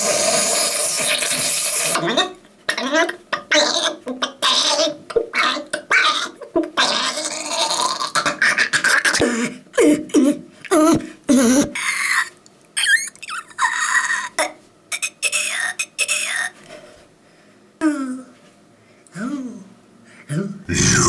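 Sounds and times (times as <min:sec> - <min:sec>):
squeaky falling vocal glides: 0:20.7 - 0:21.0.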